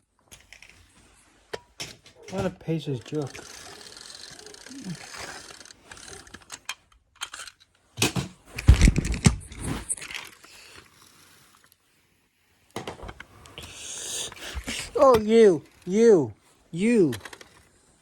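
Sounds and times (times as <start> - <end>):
toy cars knocking and bumping: 1.5 - 10.9, 12.7 - 15.8, 17.0 - 17.7.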